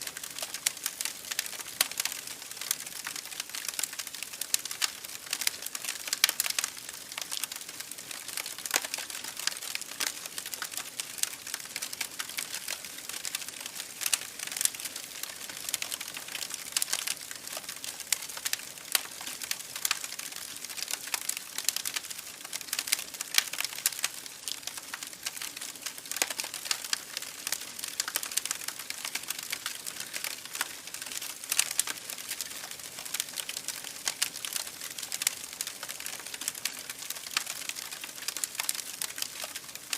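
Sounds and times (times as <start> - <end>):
campfire crackling: 0.0 - 39.9.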